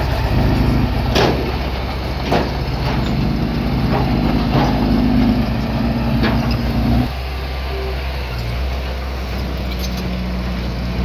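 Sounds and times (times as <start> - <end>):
sharp metallic clanks: 0.0 - 7.1
diesel engine running: 0.0 - 11.0.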